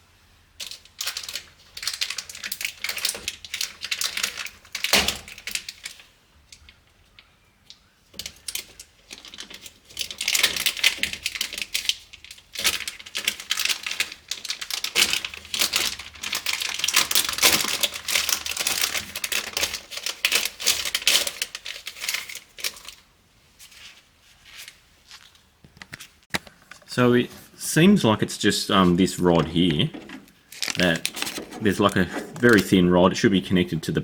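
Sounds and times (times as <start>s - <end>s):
hands crinkling and rattling parts: 0.6s - 26.9s, 29.4s - 32.9s.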